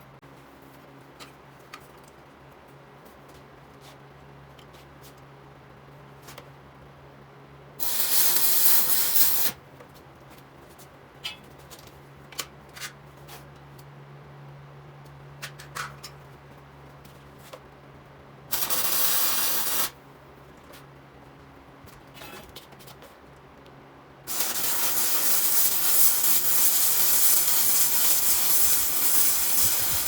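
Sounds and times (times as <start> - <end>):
loud hiss bursts: 7.8 - 9.6, 18.5 - 20.0, 24.3 - 30.0.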